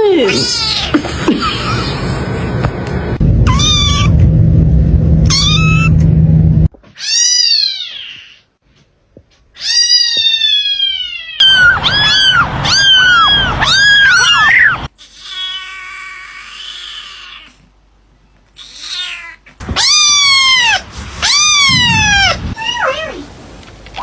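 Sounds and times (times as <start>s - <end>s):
low steady hum: 1.0s - 6.7s
cat meowing: 3.5s - 4.2s, 5.3s - 6.0s, 7.0s - 8.4s, 9.6s - 17.6s, 18.6s - 23.2s.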